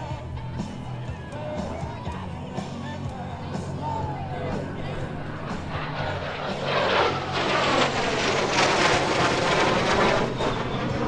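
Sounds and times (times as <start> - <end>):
fighter jet roar passing: 0.0 - 11.0.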